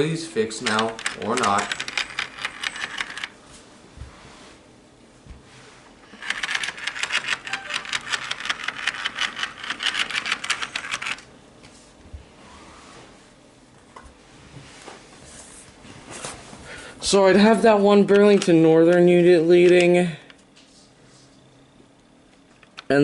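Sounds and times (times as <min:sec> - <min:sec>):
model train wheels clicking: 0:00.6 - 0:03.3, 0:06.1 - 0:11.2.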